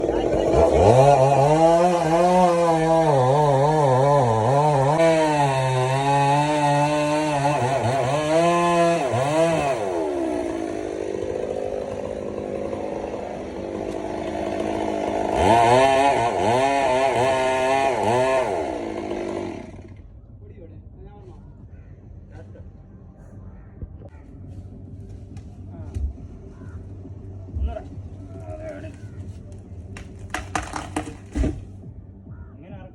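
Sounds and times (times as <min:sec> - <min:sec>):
chainsaw cutting wood: 0:00.0 - 0:20.0, 0:30.0 - 0:31.8.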